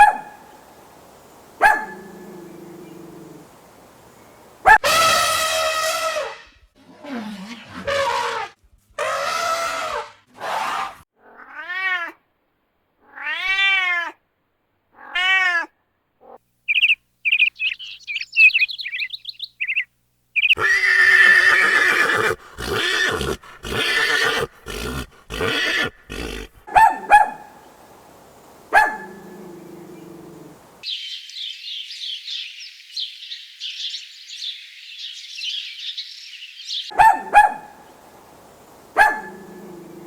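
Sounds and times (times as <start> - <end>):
harsh rough animal calls: 1.3 - 11.6, 20.6 - 30.8, 38.1 - 40.0
animal calls rising and falling: 4.6 - 11.0, 20.6 - 30.8.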